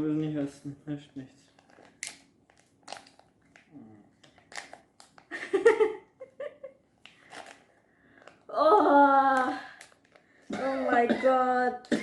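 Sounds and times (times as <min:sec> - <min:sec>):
packaging rustling: 0:01.4 - 0:05.4, 0:07.0 - 0:08.5.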